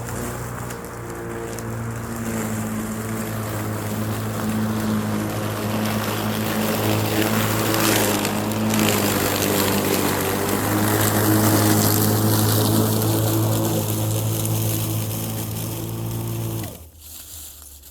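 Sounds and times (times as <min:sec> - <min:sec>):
lawn mower running: 0:00.0 - 0:17.1.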